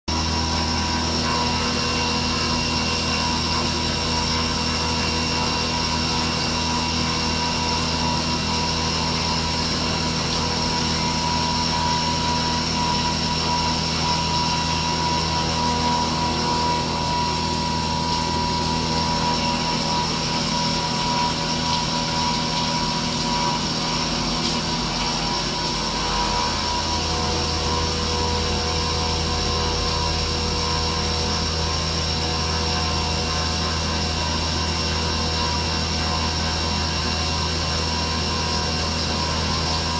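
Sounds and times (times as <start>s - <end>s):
high steady whine: 0.1s - 39.9s
machine tool humming: 0.1s - 39.9s.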